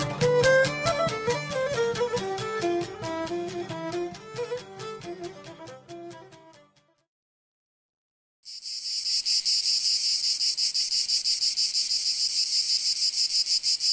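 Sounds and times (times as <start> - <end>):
music: 0.0 - 7.1
insects chirring: 8.5 - 13.9.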